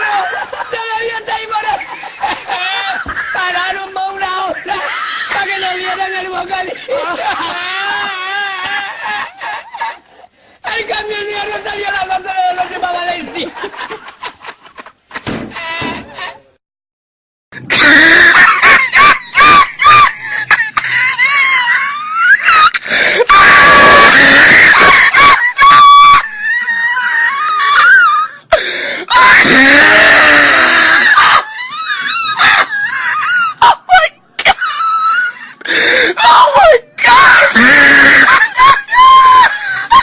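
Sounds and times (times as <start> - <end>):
man laughing loudly: 0.0 - 3.8, 6.5 - 10.1, 17.7 - 28.2, 37.1 - 40.0.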